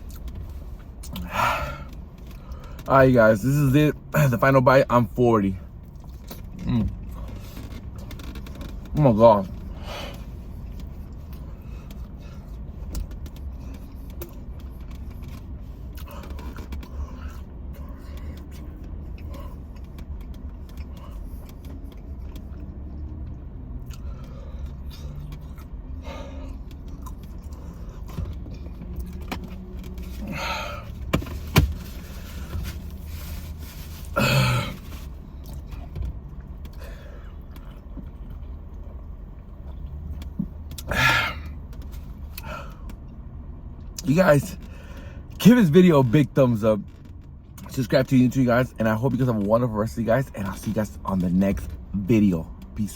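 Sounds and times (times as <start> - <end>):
low cabin rumble: 0.0 - 52.9
food wrapping rustling: 31.4 - 35.2.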